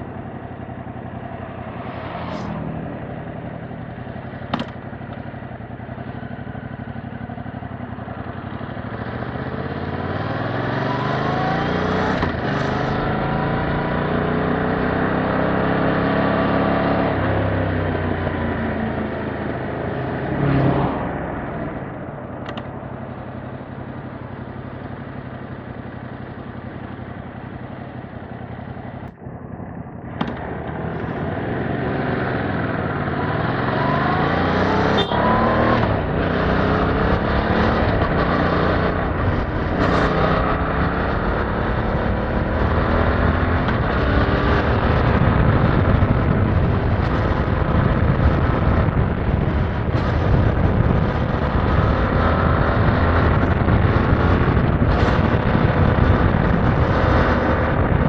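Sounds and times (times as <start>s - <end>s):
motorcycle engine revving: 0.0s - 58.0s
wind on microphone: 38.9s - 58.0s.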